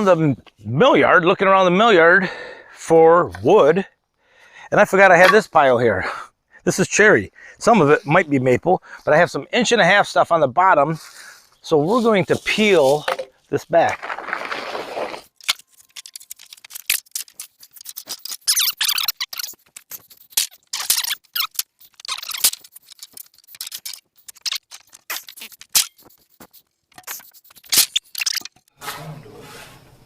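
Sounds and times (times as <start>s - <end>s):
boards scraping and squeaking: 11.7s - 30.0s.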